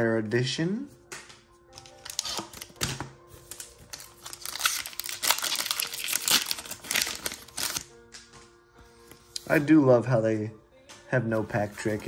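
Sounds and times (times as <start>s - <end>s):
cards being handled: 1.1s - 9.4s
foil pack crinkling: 1.8s - 7.9s.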